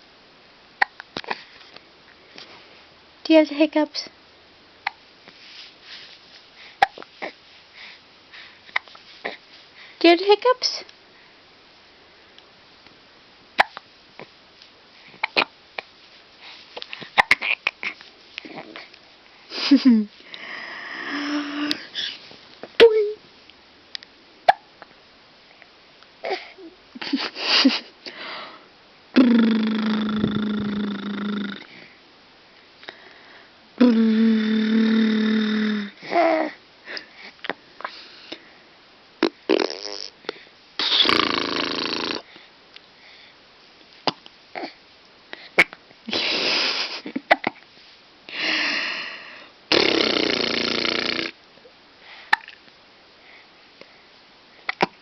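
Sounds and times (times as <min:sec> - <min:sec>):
baby hiccuping: 0:00.8 - 0:01.3, 0:04.8 - 0:05.0, 0:13.6 - 0:13.8, 0:15.2 - 0:15.5, 0:17.2 - 0:18.0, 0:24.4 - 0:24.7, 0:54.7 - 0:55.0
baby vocal sounds: 0:16.9 - 0:19.0, 0:20.9 - 0:22.2, 0:29.2 - 0:31.8, 0:33.8 - 0:36.6.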